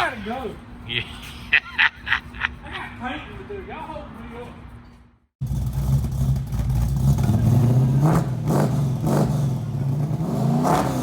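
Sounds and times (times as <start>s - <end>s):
car engine idling and revving: 5.4s - 11.0s.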